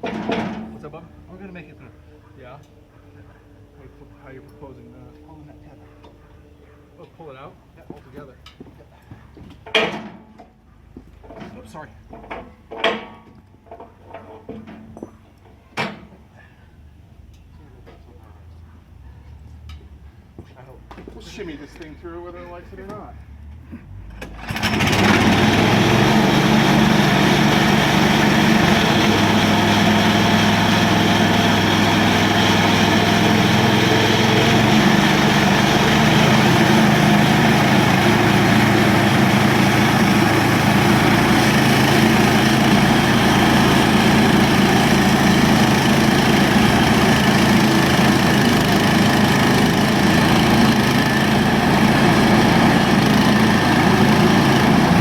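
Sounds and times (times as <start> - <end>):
sawmill engine running loud: 24.4 - 55.0
saw blade cutting log: 24.8 - 55.0.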